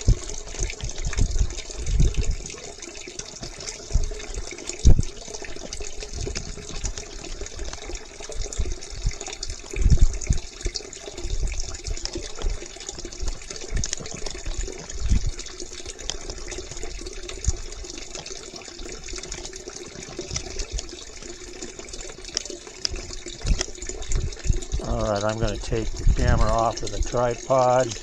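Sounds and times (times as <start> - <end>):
wind buffeting microphone: 0.0 - 2.8, 3.4 - 15.6, 22.8 - 28.0
running water rushing: 0.0 - 28.0.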